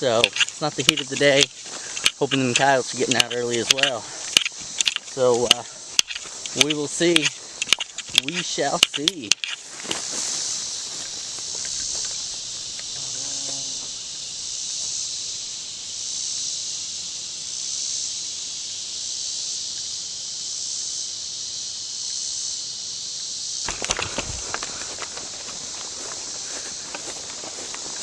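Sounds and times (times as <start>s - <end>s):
clicks and rustling: 0.0s - 10.4s, 23.7s - 28.0s
insects buzzing: 0.0s - 28.0s.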